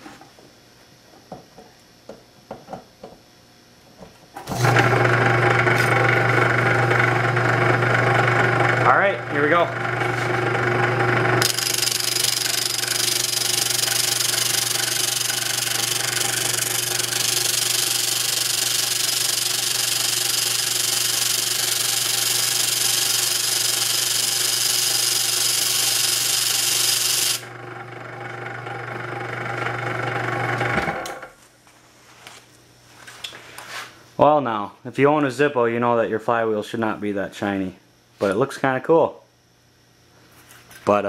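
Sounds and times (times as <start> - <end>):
power tool motor running: 4.4 - 31.3
flint wheel grinding hiss: 11.4 - 27.5.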